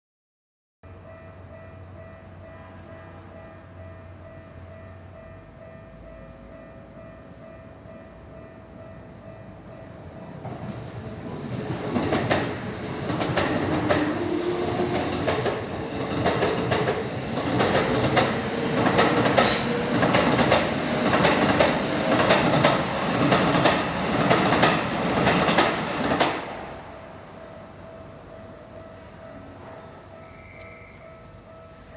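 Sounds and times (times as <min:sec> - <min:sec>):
train wheels clacking over rail joints: 0:11.8 - 0:26.5.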